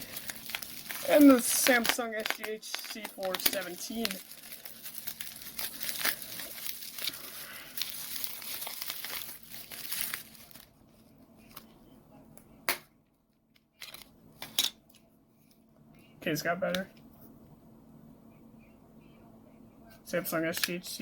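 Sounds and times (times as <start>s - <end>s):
packaging crinkling: 0.0s - 11.8s.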